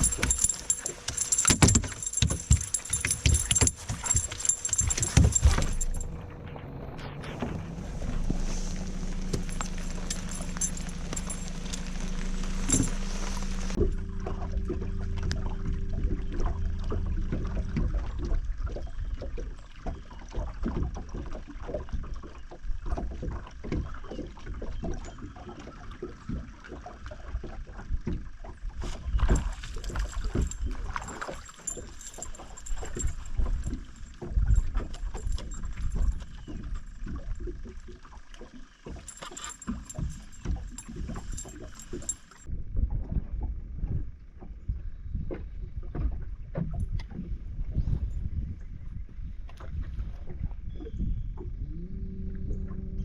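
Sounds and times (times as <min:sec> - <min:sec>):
knocks and thumps on boat: 0:00.0 - 0:06.1, 0:09.1 - 0:48.6
steady low hum: 0:00.0 - 0:19.0.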